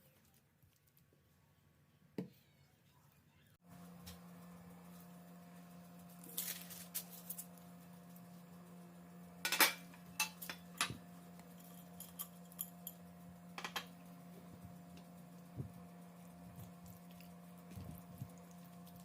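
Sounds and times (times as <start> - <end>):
utensils and dishes clinking: 9.5 - 13.0.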